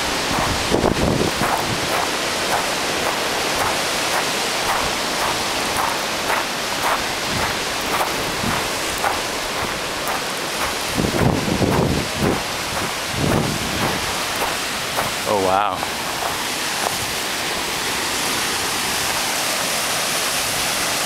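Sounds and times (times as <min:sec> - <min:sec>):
wind on microphone: 0:00.0 - 0:15.3
footsteps on dirt trail: 0:00.0 - 0:17.2
ocean surf: 0:00.0 - 0:21.0.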